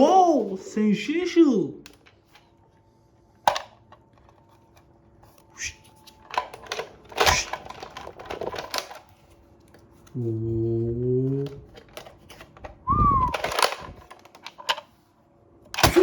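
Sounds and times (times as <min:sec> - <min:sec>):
toy guns clicking and rattling: 0:06.2 - 0:09.1, 0:13.3 - 0:14.9, 0:15.8 - 0:16.0.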